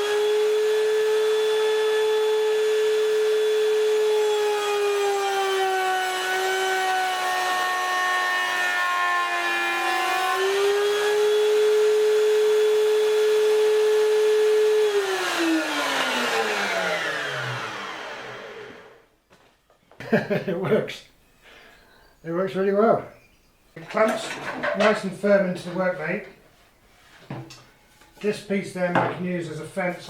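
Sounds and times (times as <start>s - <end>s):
electric router whining: 0.0s - 19.1s
router cutting wood: 0.0s - 19.1s.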